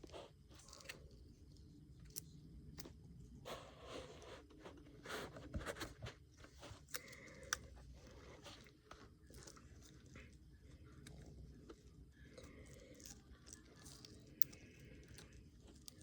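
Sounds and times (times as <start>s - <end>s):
crackling and rustling of tape: 0.0s - 16.0s.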